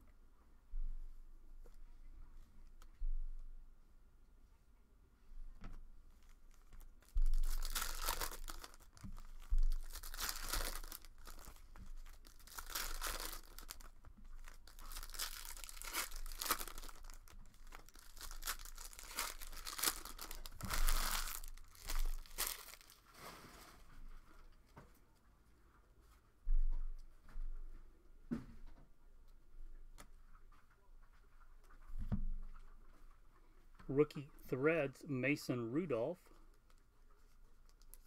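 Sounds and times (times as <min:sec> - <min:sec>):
foil packs tearing and crinkling: 0:07.2 - 0:23.0.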